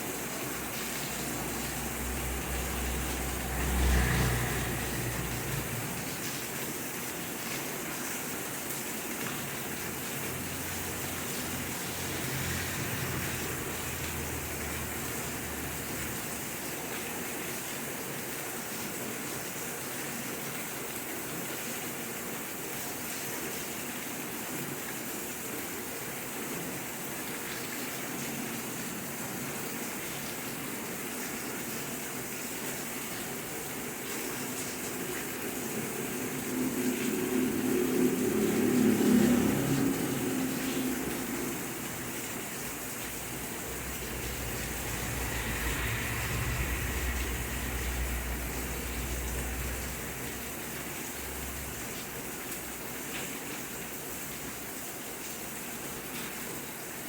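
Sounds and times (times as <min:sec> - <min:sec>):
steady rain falling: 0:00.0 - 0:57.0
low rumble: 0:00.5 - 0:06.4, 0:35.8 - 0:51.0.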